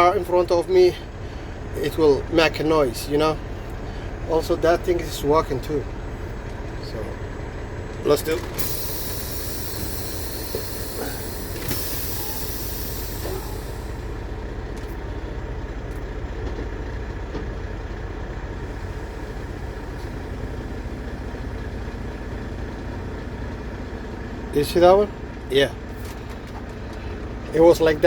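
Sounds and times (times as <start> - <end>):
truck engine and road rumble: 0.0 - 28.0
high hiss: 8.6 - 14.4.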